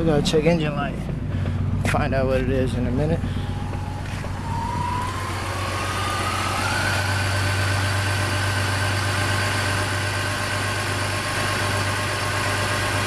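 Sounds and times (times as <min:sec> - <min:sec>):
car engine idling: 0:00.0 - 0:13.0
thin whine rising in pitch: 0:03.4 - 0:10.2.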